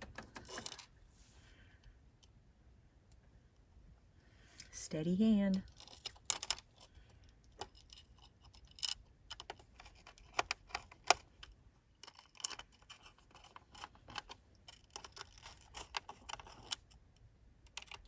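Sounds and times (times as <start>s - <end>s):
small screws clicking and tapping: 5.6s - 18.0s.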